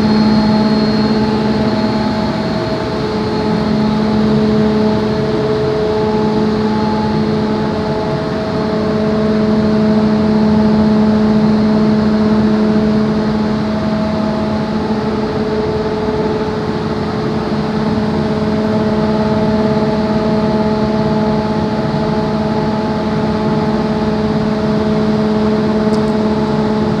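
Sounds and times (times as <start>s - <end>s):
blower rushing air: 0.0s - 8.4s
constant hum: 0.0s - 27.0s.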